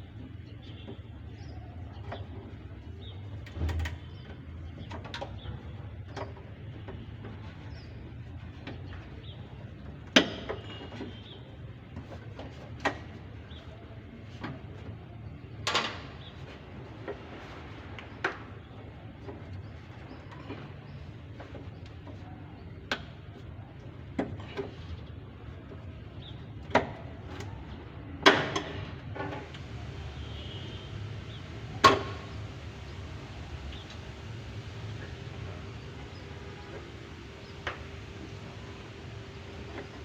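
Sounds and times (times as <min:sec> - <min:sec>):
steady low hum: 0:29.4 - 0:40.0
sharp knocks and clanks: 0:31.0 - 0:32.6.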